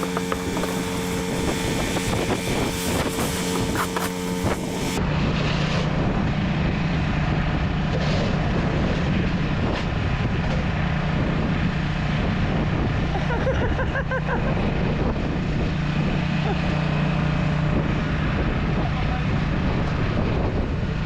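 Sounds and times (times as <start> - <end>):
snow blower engine running: 0.0 - 21.0.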